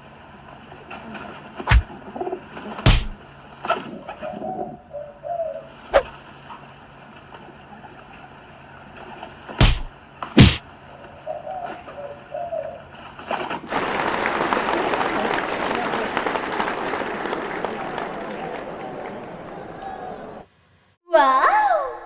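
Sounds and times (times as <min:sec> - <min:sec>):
sharp slap sound effects: 0:01.7 - 0:01.9, 0:02.9 - 0:03.2, 0:09.6 - 0:10.6
pigeons cooing: 0:03.7 - 0:05.8
crowd applause: 0:13.7 - 0:20.5.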